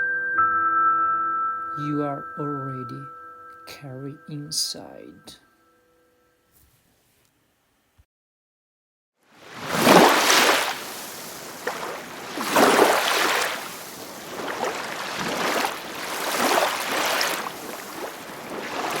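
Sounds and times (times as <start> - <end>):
waves washing in: 9.3 - 19.0.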